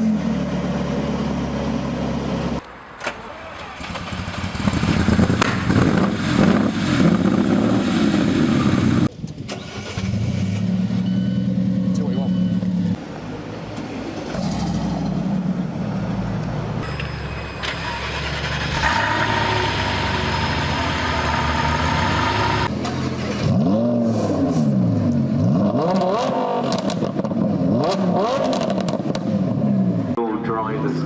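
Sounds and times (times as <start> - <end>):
engine revving: 3.6 - 13.0, 17.6 - 29.3
car engines idling: 10.1 - 23.4.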